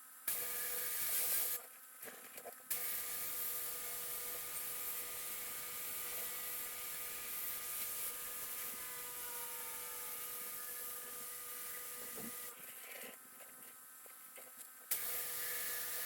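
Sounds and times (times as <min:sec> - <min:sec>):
pressure washer spray hissing: 0:00.3 - 0:01.6, 0:02.7 - 0:12.5
machine whine: 0:02.8 - 0:12.6.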